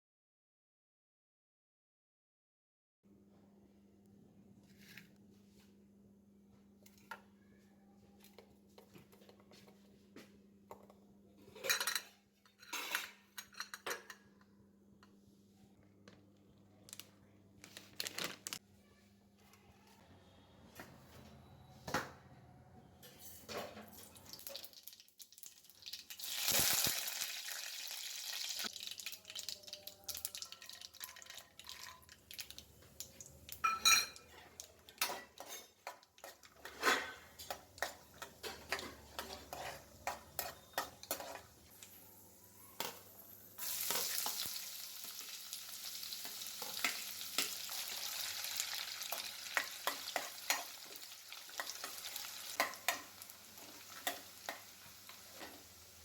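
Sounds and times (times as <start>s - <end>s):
food sizzling in hot oil: 24.2s - 32.6s, 43.0s - 56.0s
spatula stirring and scraping: 34.2s - 42.0s, 49.1s - 55.8s.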